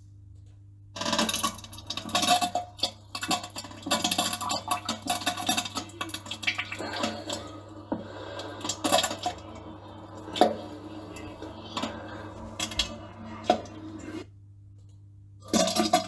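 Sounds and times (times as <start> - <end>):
steady low hum: 4.6 - 14.9.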